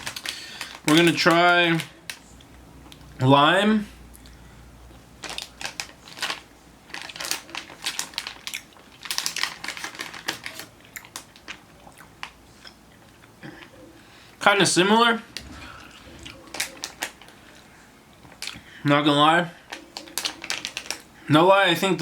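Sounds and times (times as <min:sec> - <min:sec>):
chewing candy: 0:07.0 - 0:13.8, 0:15.4 - 0:18.7.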